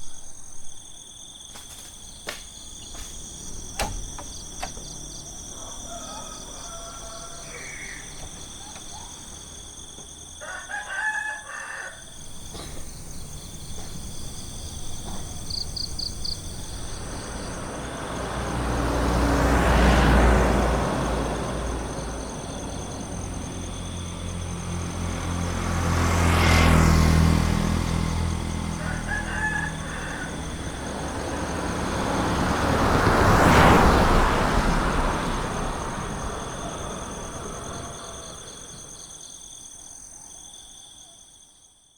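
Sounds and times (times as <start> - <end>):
insects trilling: 0.0 - 41.9
vehicles passing: 0.5 - 39.3
rooster crowing: 4.3 - 22.3, 26.0 - 39.1.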